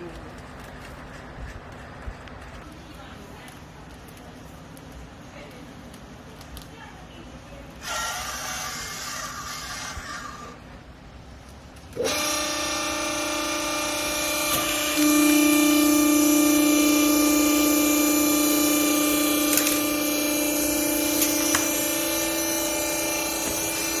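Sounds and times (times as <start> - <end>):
hydraulic pump motor whine: 11.9 - 24.0.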